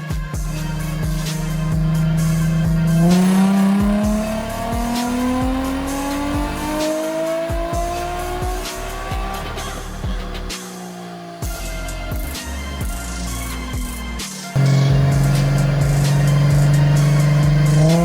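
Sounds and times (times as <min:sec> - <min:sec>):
music with steady drum beat: 0:00.0 - 0:18.0
car engine revving on a dyno: 0:00.4 - 0:18.0.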